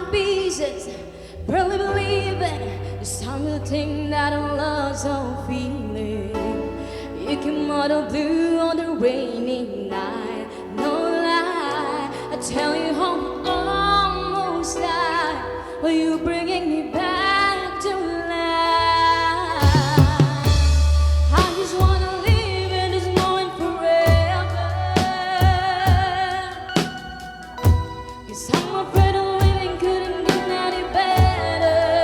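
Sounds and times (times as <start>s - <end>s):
person singing: 0.0s - 32.0s
pop ballad with band: 0.0s - 32.0s
deep bass and drum hits: 19.6s - 26.4s, 29.0s - 29.9s, 31.2s - 31.7s.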